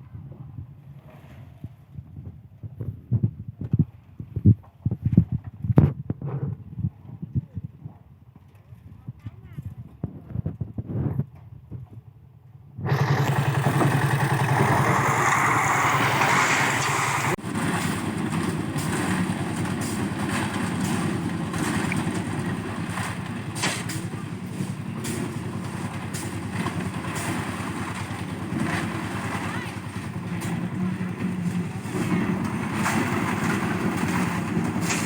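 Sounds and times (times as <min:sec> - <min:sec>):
small engine running: 0:12.8 - 0:35.0
knocks and clatter: 0:12.9 - 0:35.0.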